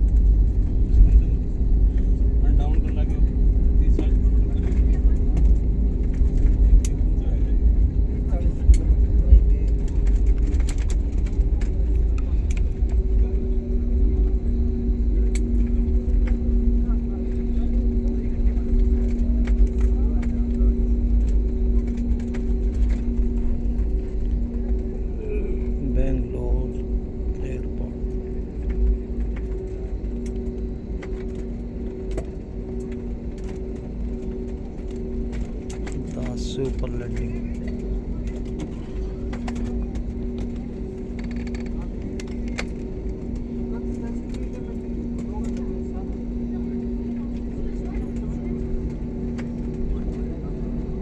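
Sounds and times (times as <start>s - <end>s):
jet engines and airflow rumble: 0.0s - 51.0s
steady hum: 0.0s - 51.0s
small clicks and rattles: 34.2s - 46.2s.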